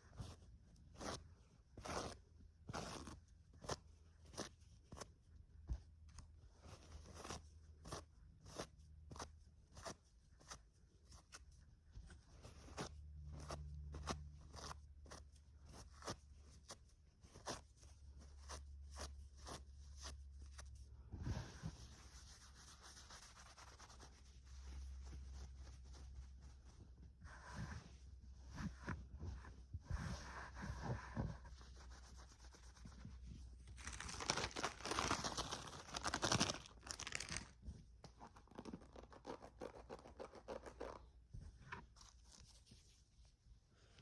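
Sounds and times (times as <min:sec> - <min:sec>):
scratchy rubbing: 0:12.4 - 0:37.6, 0:38.2 - 0:41.1.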